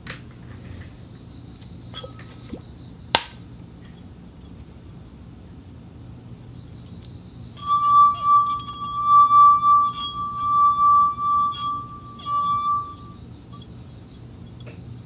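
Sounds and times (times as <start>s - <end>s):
light glass clinks: 1.9s - 2.4s, 7.6s - 13.8s
glass rim ringing tone: 7.5s - 13.8s.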